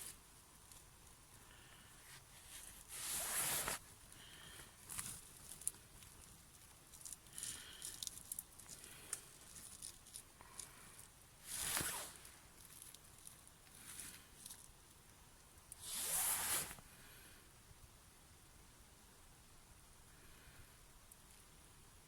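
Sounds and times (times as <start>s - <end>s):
rustling and small clicks of handling: 0.0s - 1.2s, 4.8s - 16.2s.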